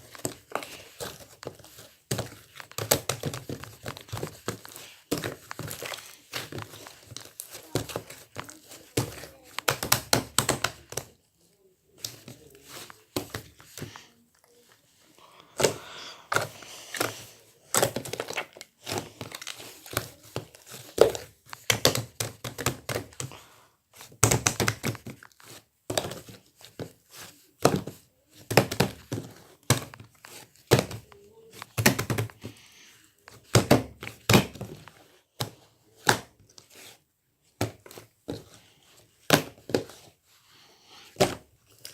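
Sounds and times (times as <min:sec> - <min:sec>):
hands squishing slime: 0:00.0 - 0:41.9.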